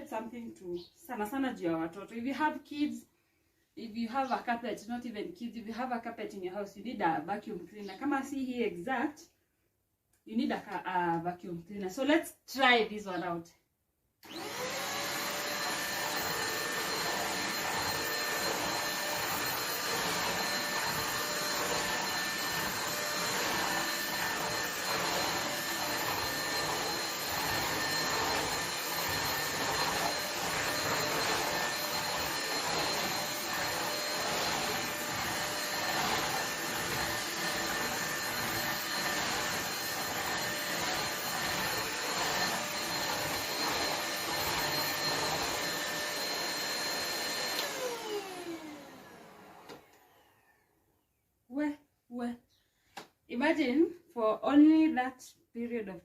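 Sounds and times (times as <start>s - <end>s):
vacuum cleaner on carpet: 14.2s - 50.6s.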